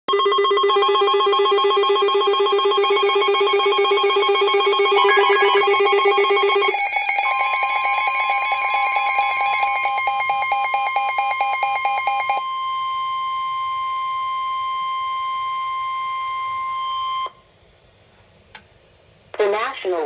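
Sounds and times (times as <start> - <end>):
steady warning alarm tone: 0.1 - 17.4
rapid pulsing electronic beep: 1.6 - 6.8.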